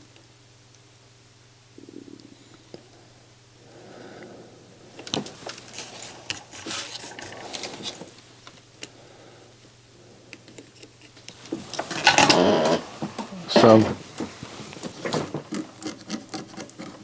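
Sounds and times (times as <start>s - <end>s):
faint steady hum: 0.0s - 17.0s
hand tools clicking and tapping: 10.4s - 17.0s.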